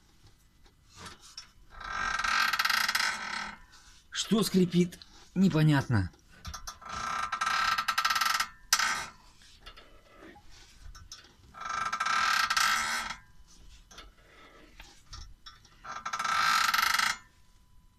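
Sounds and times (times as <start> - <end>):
car suspension creaking: 1.0 - 3.7.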